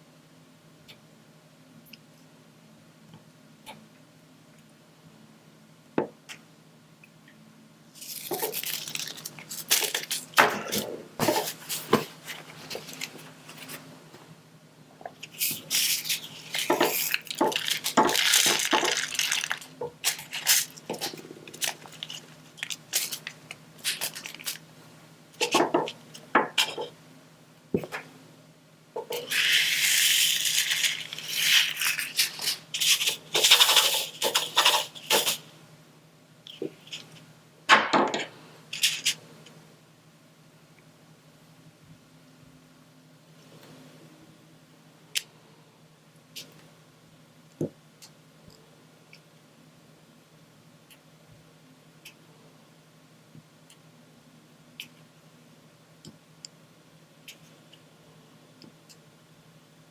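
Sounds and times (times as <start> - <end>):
crackly rustling: 8.0 - 10.4, 15.2 - 24.8.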